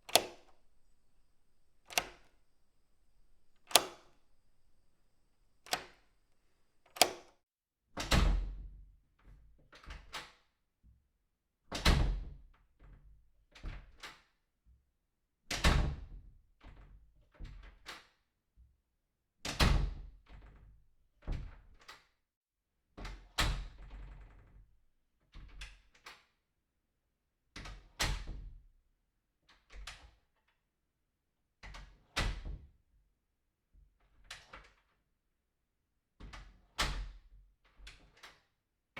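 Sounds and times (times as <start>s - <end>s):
door handle and latch clicks: 0.0s - 7.3s.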